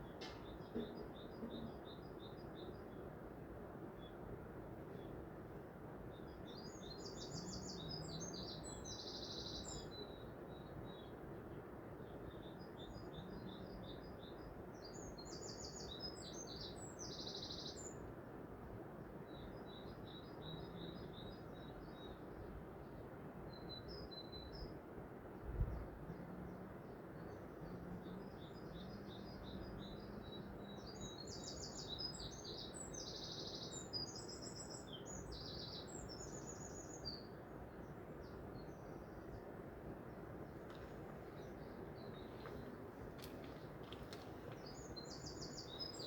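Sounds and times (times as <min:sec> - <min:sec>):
songbird singing: 0:00.0 - 0:18.2, 0:19.1 - 0:46.0
brief knock: 0:00.2 - 0:01.8
background hiss: 0:02.0 - 0:46.0.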